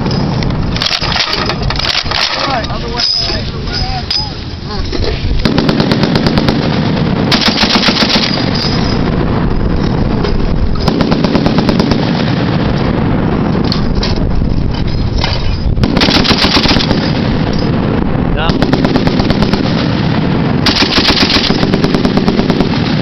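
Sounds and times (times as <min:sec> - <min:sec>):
low rumble: 0:00.0 - 0:23.0
machine gun bursts: 0:00.8 - 0:02.6, 0:05.4 - 0:08.8, 0:15.8 - 0:17.2, 0:20.6 - 0:23.0.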